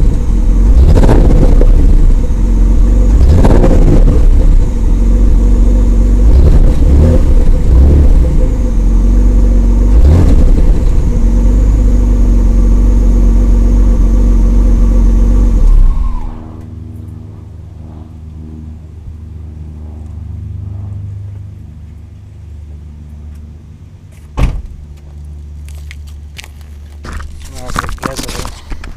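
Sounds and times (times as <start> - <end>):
car engine idling with misfires: 0.0 - 17.1
high tone sliding down: 13.4 - 16.8.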